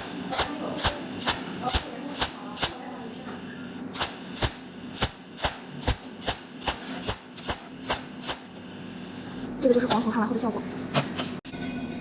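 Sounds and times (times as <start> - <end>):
welding arc snaps: 0.0 - 2.9, 3.9 - 8.6
steady low hum: 0.0 - 10.9.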